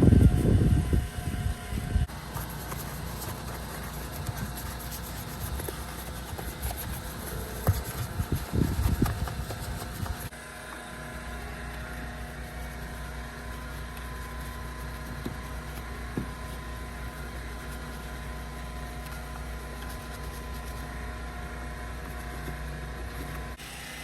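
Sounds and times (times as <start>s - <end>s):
motor humming: 0.0s - 24.0s
thumps and rustling: 2.3s - 10.3s, 13.4s - 20.9s.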